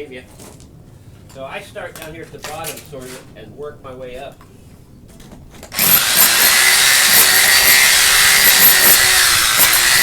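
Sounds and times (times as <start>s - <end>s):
electric chipping hammer on concrete: 5.7s - 10.0s.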